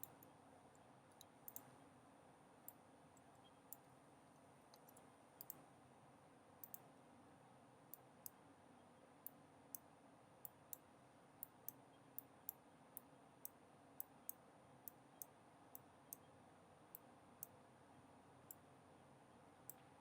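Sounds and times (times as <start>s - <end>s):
computer mouse clicks: 0.0s - 1.7s, 4.7s - 5.6s, 6.6s - 6.9s.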